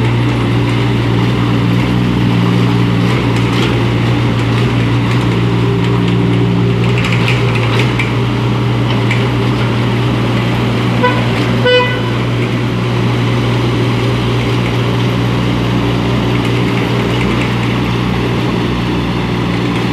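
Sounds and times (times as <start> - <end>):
excavator diesel engine running: 0.0 - 19.9
short horn toots: 11.0 - 12.5.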